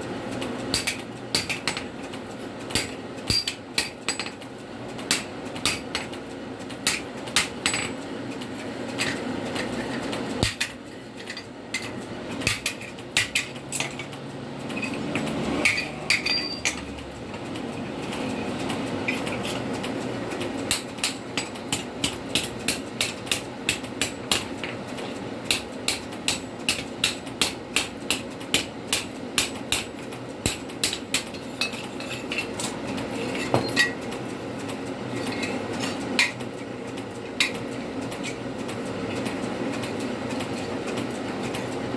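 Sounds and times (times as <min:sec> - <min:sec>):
hammer striking steel on anvil: 0:00.7 - 0:01.9, 0:02.7 - 0:04.4, 0:05.1 - 0:06.1, 0:06.8 - 0:08.0, 0:11.8 - 0:14.1, 0:14.8 - 0:16.8.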